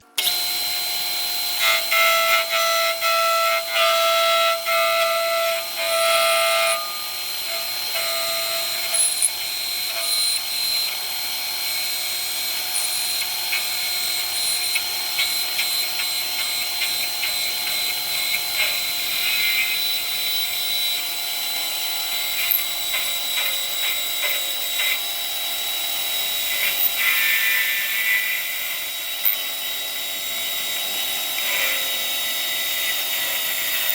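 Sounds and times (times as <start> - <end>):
lathe tool cutting: 0.0 - 33.9
lathe whining: 0.0 - 33.9
short ringing tones: 5.9 - 11.0.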